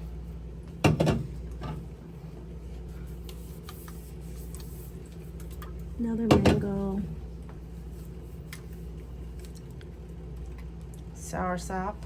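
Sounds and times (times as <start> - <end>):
bottle knocking on shelf: 0.8 - 1.3.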